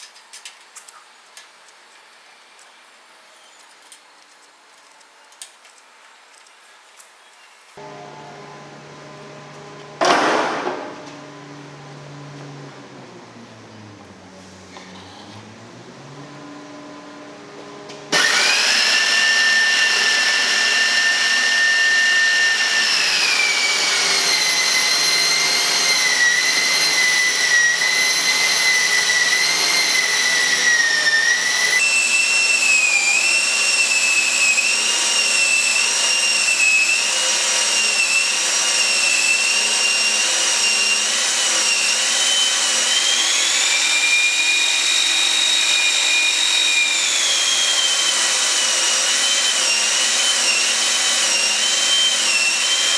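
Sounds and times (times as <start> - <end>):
electric drill whining: 17.7 - 52.9.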